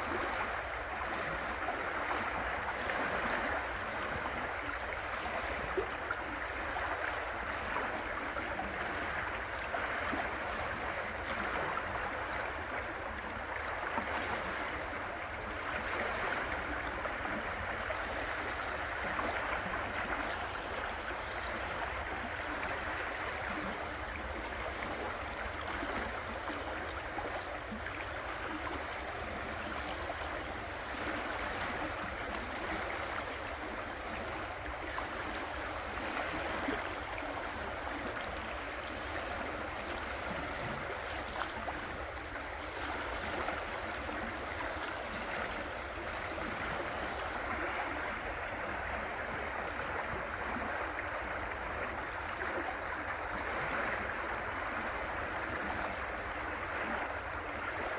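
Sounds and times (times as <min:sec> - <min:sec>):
river water rushing: 0:00.0 - 0:57.9.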